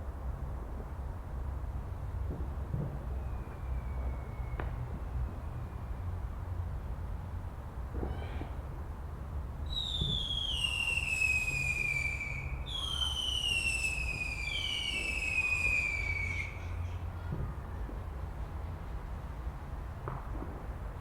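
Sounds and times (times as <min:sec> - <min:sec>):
shrill firework whistles: 0:03.0 - 0:06.1, 0:09.7 - 0:17.0.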